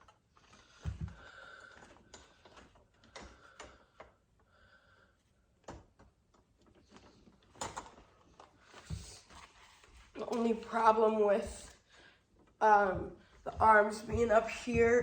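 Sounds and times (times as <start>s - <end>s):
cloth rustling: 6.8s - 15.0s.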